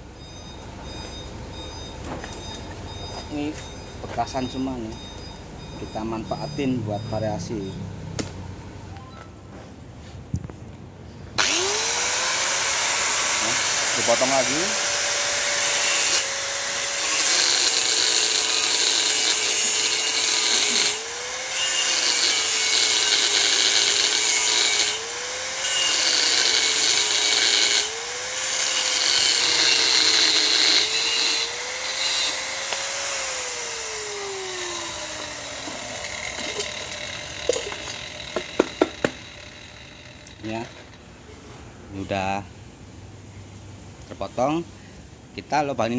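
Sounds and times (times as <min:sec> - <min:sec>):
power tool cutting steel: 0:11.4 - 0:41.0.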